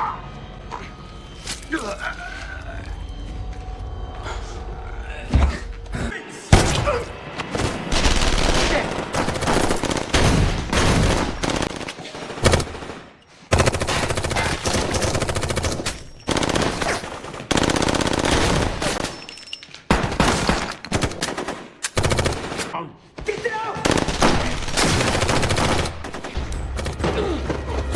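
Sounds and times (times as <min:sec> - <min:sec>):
automatic gunfire bursts: 0:13.5 - 0:18.8.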